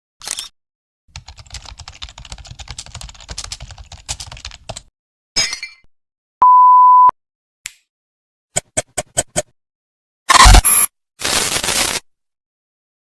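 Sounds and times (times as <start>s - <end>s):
censor bleep: 6.4s - 7.2s, 10.3s - 10.9s.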